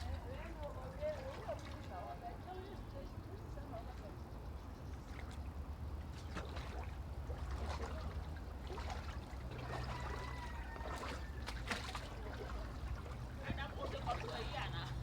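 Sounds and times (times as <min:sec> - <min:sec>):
floodwater running and splashing: 0:06.2 - 0:15.0.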